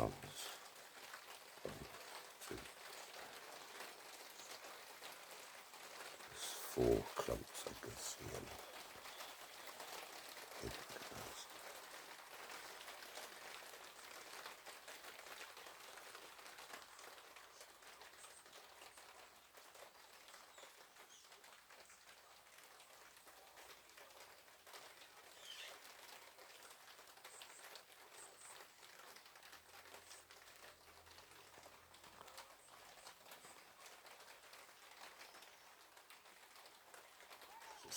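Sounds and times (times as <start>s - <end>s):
light rain pattering on patio: 0.0s - 37.9s
faint bird calls: 6.0s - 11.6s, 25.4s - 25.9s, 37.4s - 37.9s.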